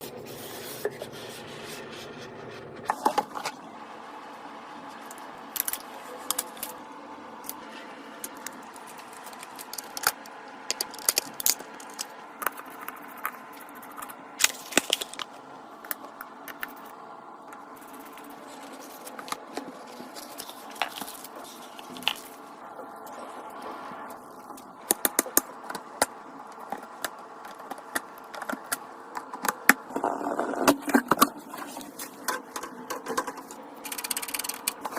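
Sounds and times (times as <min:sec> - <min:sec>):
steady background hum: 0:00.0 - 0:34.9.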